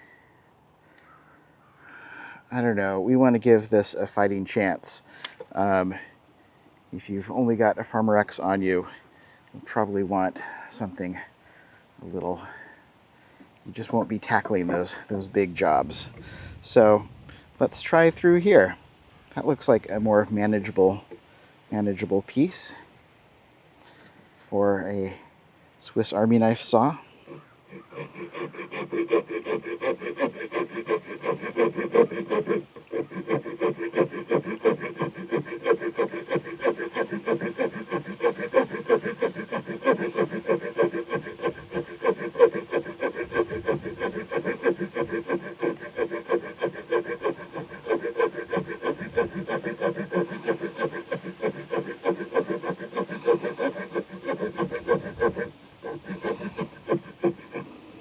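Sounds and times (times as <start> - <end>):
saw blade cutting wood: 27.3 - 57.8.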